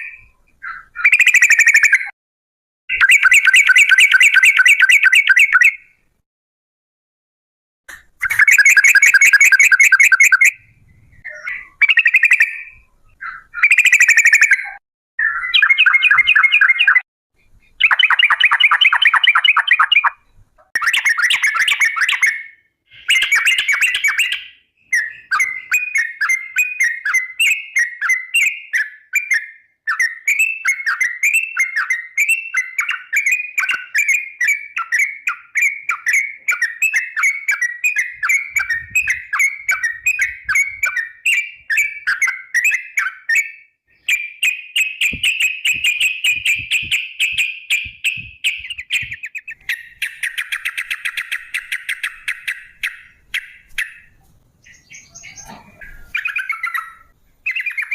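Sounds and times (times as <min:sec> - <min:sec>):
bird singing rapid trills: 0:17.7 - 0:57.9.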